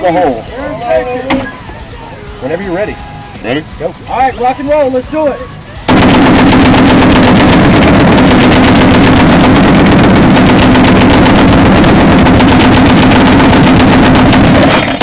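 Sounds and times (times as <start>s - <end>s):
machine gun firing burst: 5.9s - 15.0s.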